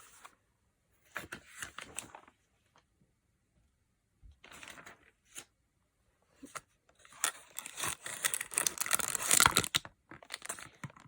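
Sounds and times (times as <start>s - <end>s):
packaging crinkling and tearing: 7.2s - 11.0s.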